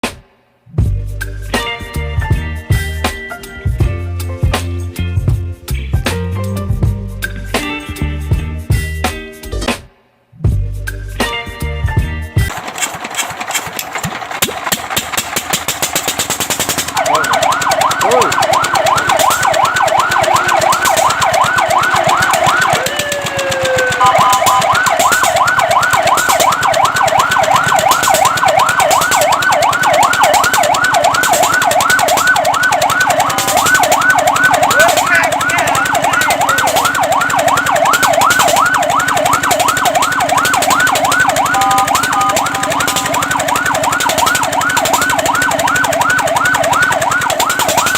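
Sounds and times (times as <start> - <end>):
fire truck siren yelping: 12.5 - 47.9.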